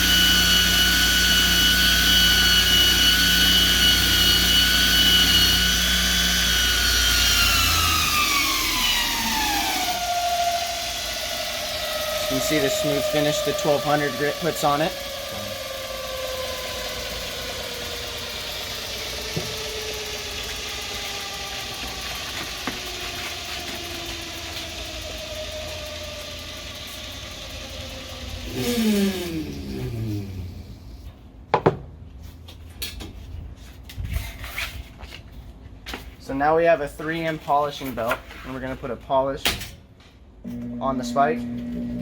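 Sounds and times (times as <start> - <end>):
belt sander motor running: 0.0 - 31.0, 40.5 - 42.0.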